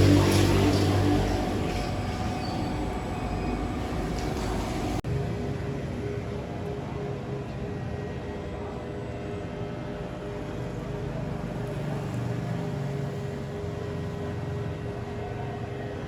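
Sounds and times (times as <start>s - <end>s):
machine drone with hum: 0.0s - 11.7s.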